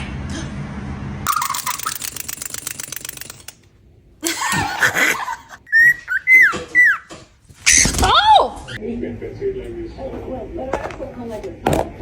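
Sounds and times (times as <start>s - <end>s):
fast clicking: 1.3s - 3.7s
parrot whistling: 5.7s - 7.1s.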